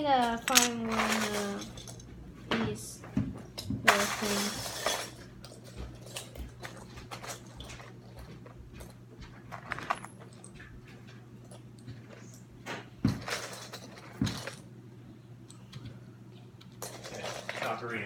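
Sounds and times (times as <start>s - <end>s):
plastic pieces clicking and rattling: 0.2s - 2.0s, 9.5s - 10.2s.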